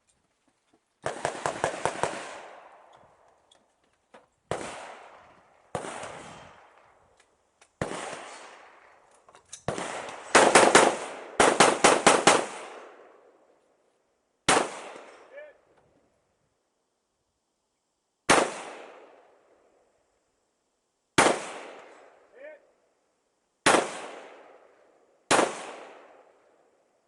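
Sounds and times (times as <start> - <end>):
rifle gunshots: 1.0 - 2.8, 4.5 - 6.8, 7.8 - 8.8, 9.7 - 13.0, 14.5 - 15.3, 18.3 - 19.0, 21.2 - 21.9, 23.6 - 24.6, 25.3 - 26.2.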